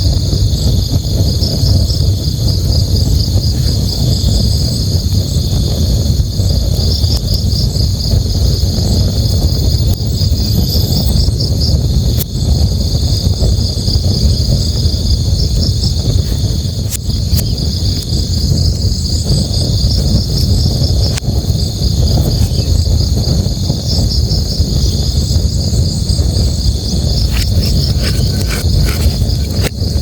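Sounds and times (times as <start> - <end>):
crickets chirping: 0.0 - 30.0
campfire crackling: 10.6 - 30.0.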